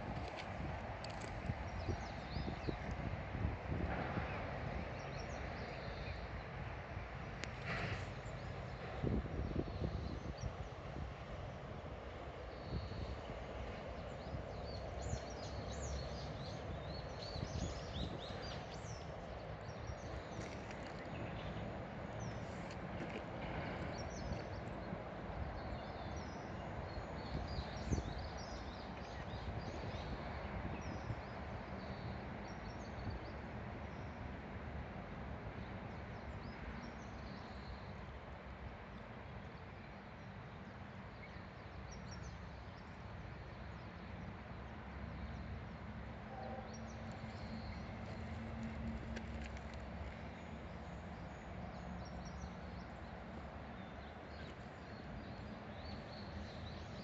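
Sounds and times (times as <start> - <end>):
wind buffeting microphone: 0.0 - 5.8, 7.4 - 31.6.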